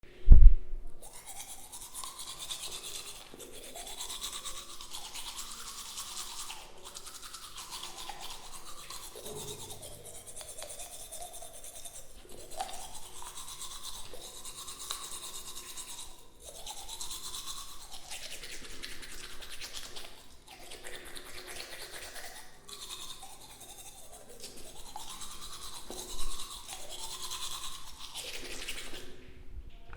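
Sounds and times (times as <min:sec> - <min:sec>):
toothbrush scrubbing teeth: 0:01.0 - 0:29.2.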